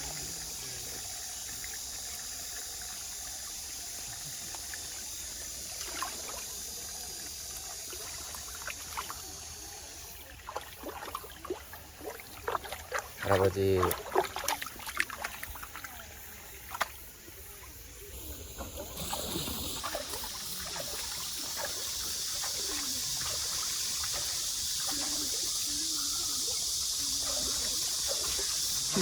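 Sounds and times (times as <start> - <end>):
stream water running over rocks: 0.0 - 29.0.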